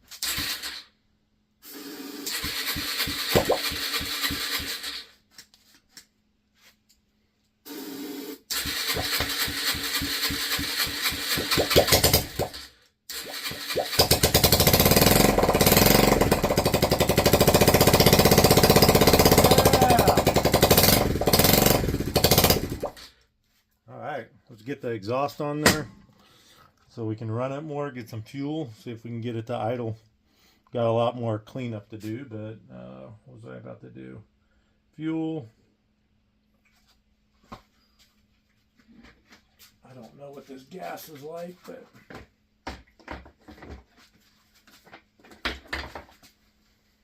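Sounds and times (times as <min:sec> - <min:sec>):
motorcycle engine turning over: 0:00.1 - 0:00.9, 0:01.7 - 0:05.2, 0:07.7 - 0:23.0
motorcycle engine running loudly: 0:14.0 - 0:22.8.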